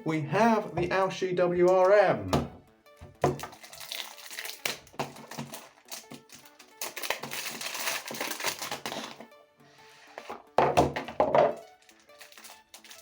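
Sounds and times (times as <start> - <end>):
background music: 0.0 - 13.0
packaging rustling and crinkling: 3.3 - 9.3, 11.5 - 13.0
box clicks and knocks: 10.6 - 11.6.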